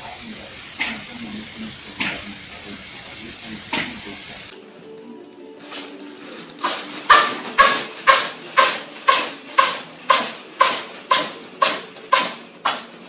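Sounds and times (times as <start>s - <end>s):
cat sneezing: 2.0s - 2.4s, 3.7s - 4.0s, 6.6s - 12.9s.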